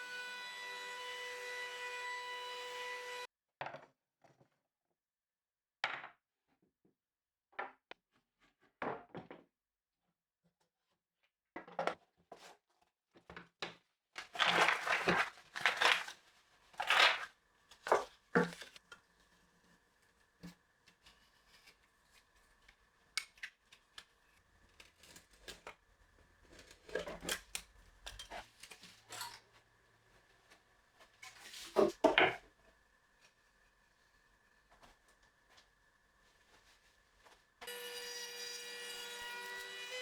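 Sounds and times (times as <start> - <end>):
wooden workpieces knocking and scraping: 16.7 - 19.2, 26.5 - 29.6, 31.0 - 32.6.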